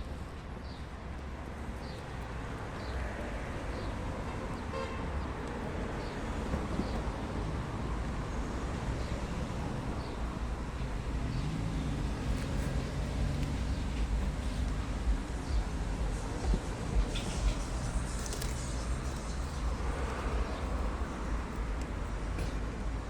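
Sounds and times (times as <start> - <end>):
road traffic rumble: 0.0 - 23.0
car horn toot: 4.7 - 5.2.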